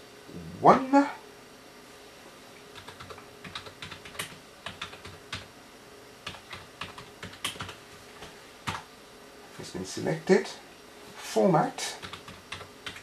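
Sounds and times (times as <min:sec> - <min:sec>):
keyboard typing: 0:02.8 - 0:05.5, 0:06.2 - 0:08.8, 0:12.0 - 0:13.0.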